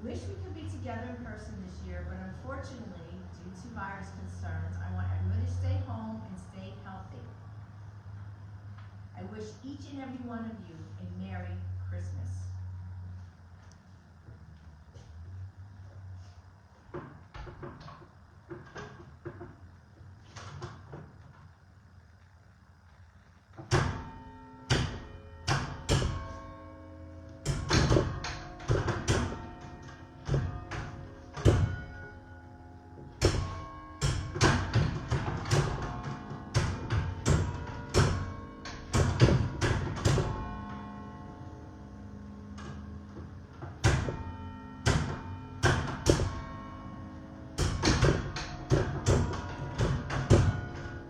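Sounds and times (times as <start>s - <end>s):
church bells ringing a melody: 23.7s - 51.0s.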